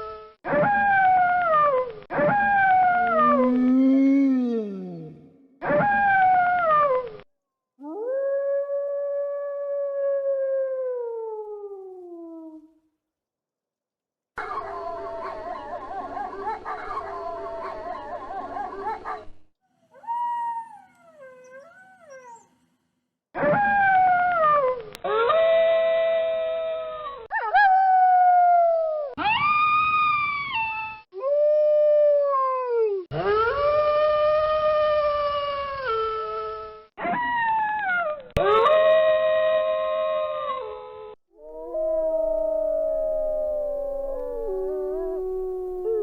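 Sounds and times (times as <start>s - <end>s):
wolves howling: 2.2s - 4.0s, 41.4s - 46.0s.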